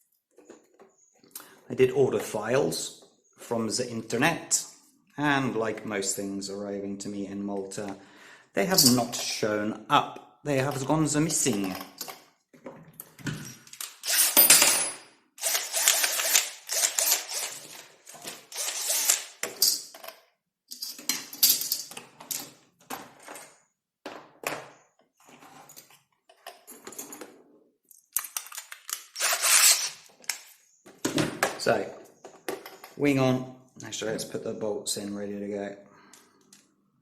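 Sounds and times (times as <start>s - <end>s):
tools clattering and rattling: 8.7s - 9.4s, 10.7s - 24.7s, 25.3s - 27.4s, 32.2s - 33.0s.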